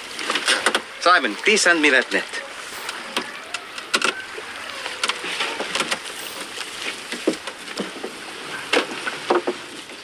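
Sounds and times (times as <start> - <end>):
water hissing: 0.0 - 8.7
wooden knocks and clatter on boat: 0.2 - 1.0, 2.8 - 10.0.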